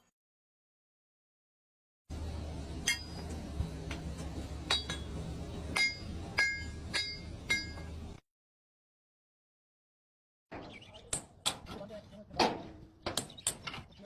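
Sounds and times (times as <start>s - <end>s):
steady low hum: 2.1s - 8.2s.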